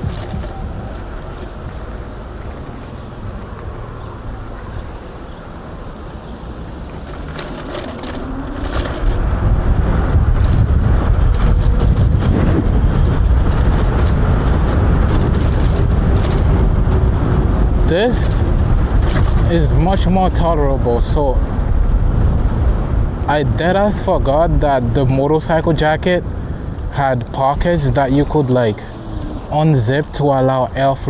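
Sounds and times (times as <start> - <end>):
clicks and rattles: 0.0 - 1.9, 6.9 - 17.7, 18.4 - 19.7
wind buffeting microphone: 0.0 - 31.0.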